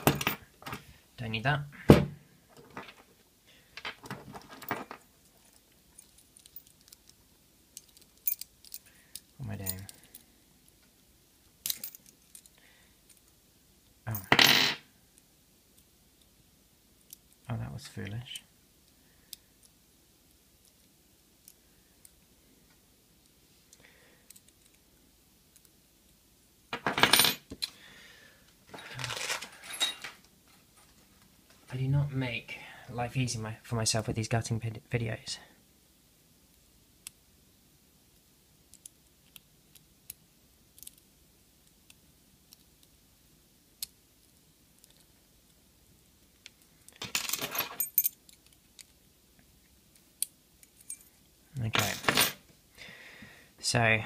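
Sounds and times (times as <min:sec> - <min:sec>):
small metal parts clattering: 0:03.8 - 0:07.0, 0:28.7 - 0:30.2, 0:46.9 - 0:48.4
padlock and tools clicking: 0:07.8 - 0:10.2.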